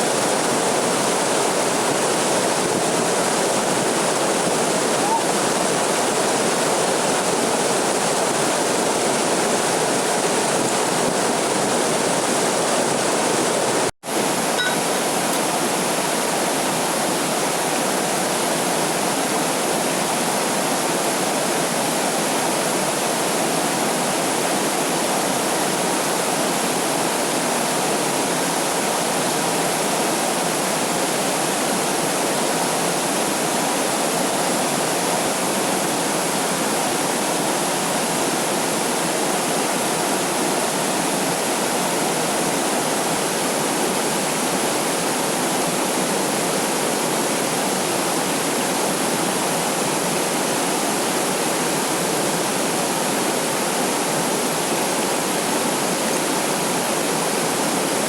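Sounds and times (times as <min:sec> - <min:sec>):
waterfall rushing: 0:00.0 - 0:29.9.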